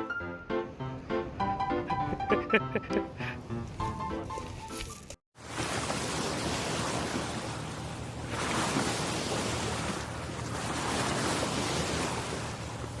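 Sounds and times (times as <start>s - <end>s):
wind: 0.0s - 13.0s
surf breaking on a beach: 5.4s - 13.0s.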